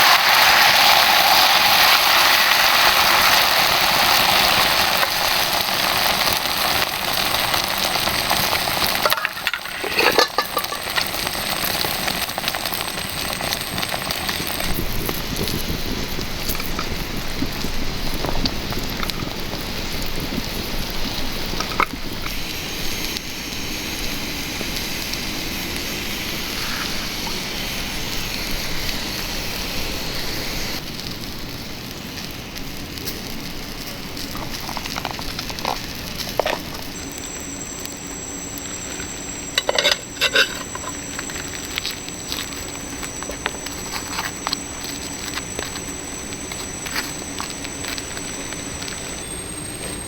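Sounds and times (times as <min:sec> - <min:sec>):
campfire crackling: 0:00.0 - 0:50.0
rain pattering: 0:00.0 - 0:50.0
thin high steady tone: 0:36.9 - 0:50.0.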